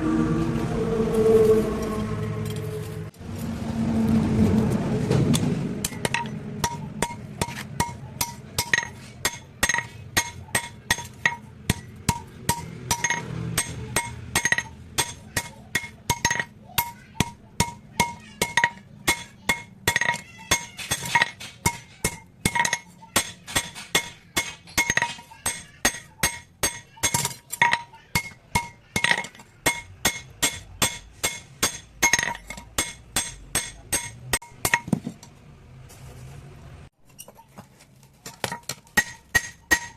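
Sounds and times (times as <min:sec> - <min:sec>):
hammer striking metal on anvil: 0:05.3 - 0:35.1, 0:38.4 - 0:39.9.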